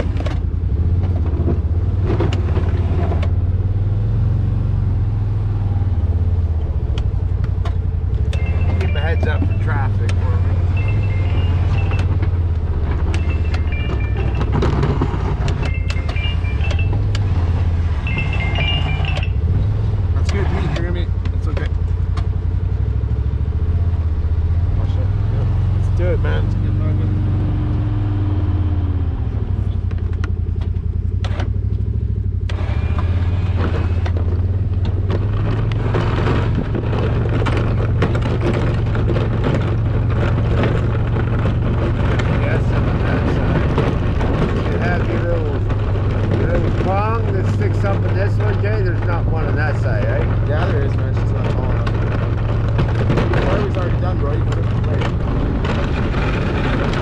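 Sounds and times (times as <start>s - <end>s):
knocks and rattles: 0.0s - 3.4s, 6.4s - 22.5s, 29.6s - 57.0s
vehicle engine droning: 0.0s - 57.0s
crackling scraping noise: 10.2s - 21.0s, 32.5s - 57.0s.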